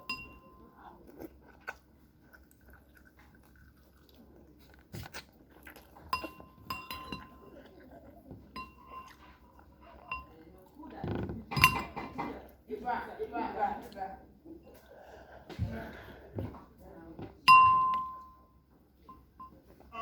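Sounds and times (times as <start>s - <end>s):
spoon clinking against bowl: 0.0s - 0.6s, 6.1s - 7.6s, 8.5s - 9.2s, 10.0s - 10.4s, 11.5s - 12.2s, 17.5s - 18.5s
quiet chewing: 0.0s - 12.7s, 13.8s - 20.0s.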